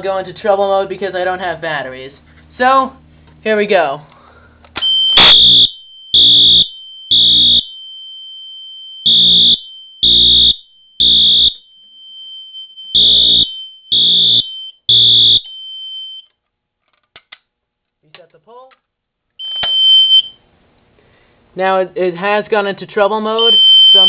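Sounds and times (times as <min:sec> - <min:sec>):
fire alarm horn blasts: 0:04.8 - 0:08.3, 0:08.9 - 0:11.8, 0:12.7 - 0:15.7, 0:23.4 - 0:24.0.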